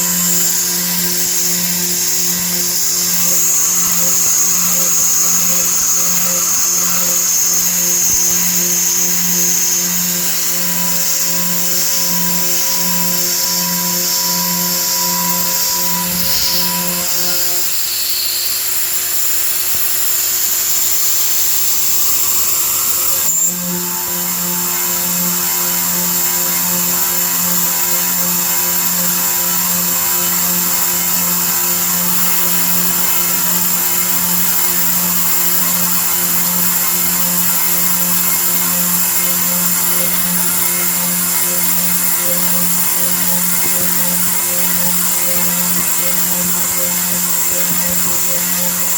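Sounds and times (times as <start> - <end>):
pulsing low hum: 0.0 - 17.8
milling machine spindle whine: 0.0 - 48.9.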